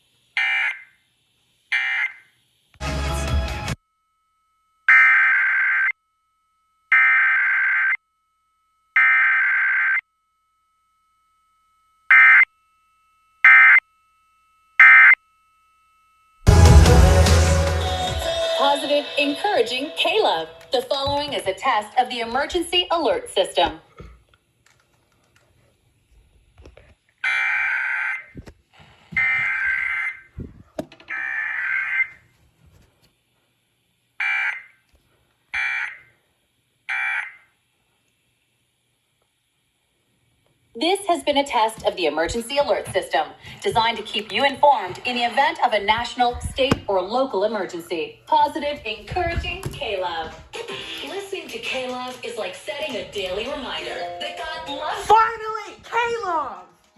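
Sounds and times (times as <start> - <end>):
broadcast audio: 16.5 - 23.9, 40.8 - 56.9.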